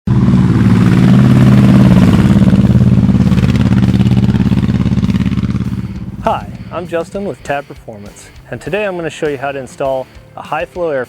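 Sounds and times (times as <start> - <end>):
motorcycle engine running: 0.1 - 8.2.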